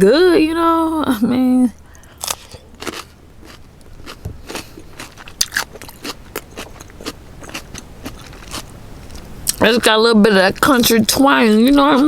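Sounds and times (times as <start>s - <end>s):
chewing with small crunches: 1.8s - 12.0s.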